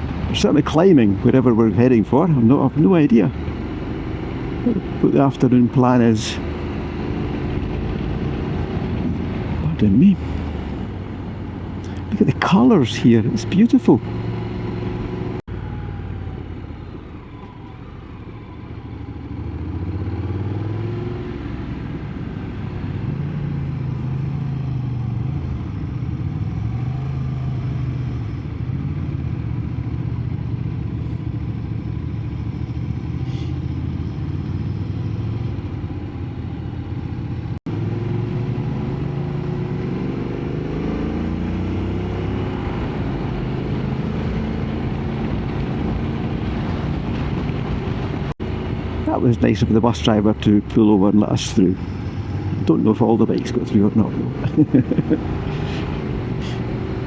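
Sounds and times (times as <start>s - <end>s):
motorcycle engine revving: 2.4s - 16.4s, 18.7s - 50.0s, 50.7s - 57.0s.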